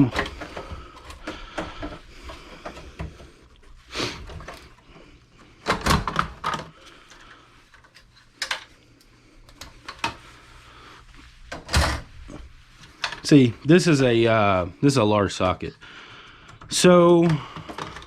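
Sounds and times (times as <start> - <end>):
computer parts knocking and clattering: 5.6 - 6.7, 16.6 - 18.0.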